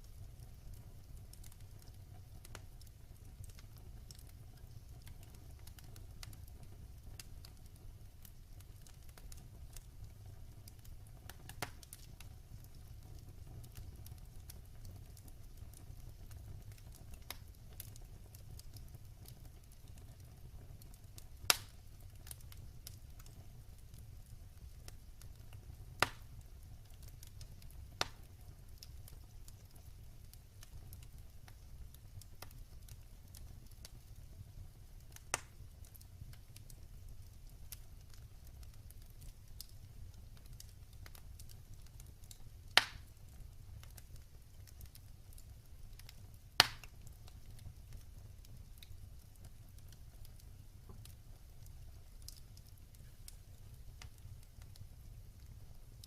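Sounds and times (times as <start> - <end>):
low rumble of flames: 0.0 - 56.0
wood fire crackling: 0.0 - 56.0
sharp pops of burning wood: 10.7 - 12.4, 21.2 - 23.4, 25.0 - 26.3, 26.9 - 31.7, 35.1 - 36.8, 37.7 - 54.9.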